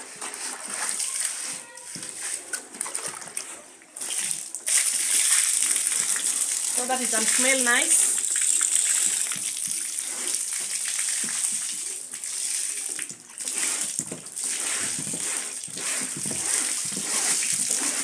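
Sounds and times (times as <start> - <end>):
water splashing and sloshing: 0.0 - 18.0.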